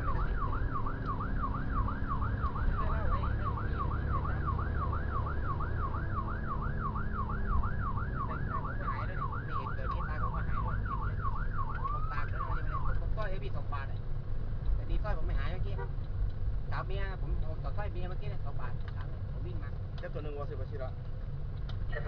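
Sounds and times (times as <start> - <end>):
siren yelping: 0.0 - 13.0
low rumble of vehicle on road: 0.0 - 22.0.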